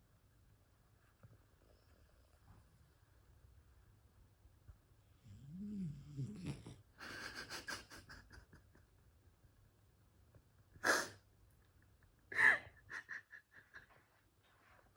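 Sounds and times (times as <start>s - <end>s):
cat snoring: 5.2s - 6.8s
cat snorting breaths: 10.8s - 11.2s.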